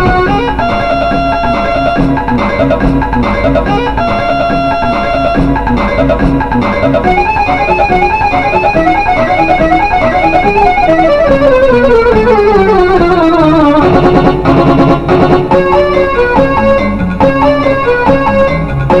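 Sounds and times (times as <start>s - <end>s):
instrumental background music: 0.0s - 19.0s.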